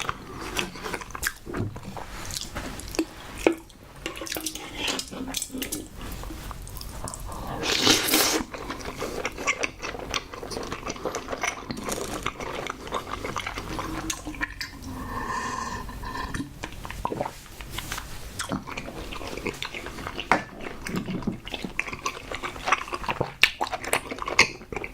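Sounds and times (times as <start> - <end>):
close chewing and mouth sounds: 0.0 - 24.9.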